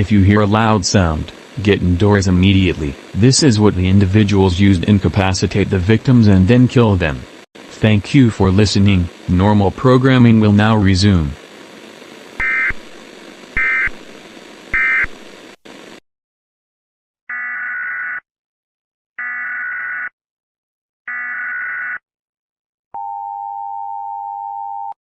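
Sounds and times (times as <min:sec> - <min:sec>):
buzzy digital data bursts: 0:00.0 - 0:16.0
steady attention tone: 0:00.0 - 0:16.0.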